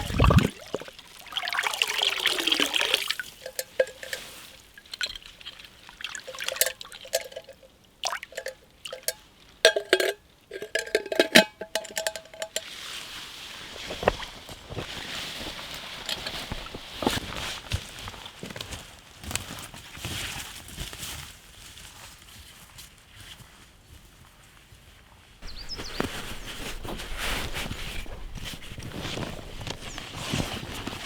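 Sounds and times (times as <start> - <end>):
liquid pouring and dribbling: 0.0 - 9.2
camp cookware clinking: 2.4 - 12.8, 15.8 - 17.2, 25.4 - 31.0.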